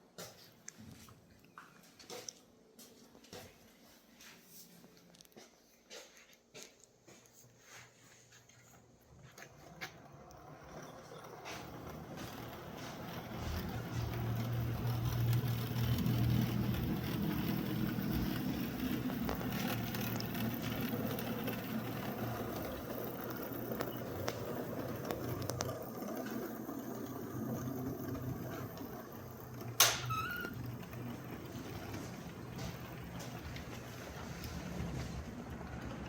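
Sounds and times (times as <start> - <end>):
model train rumbling on track: 9.6 - 36.0.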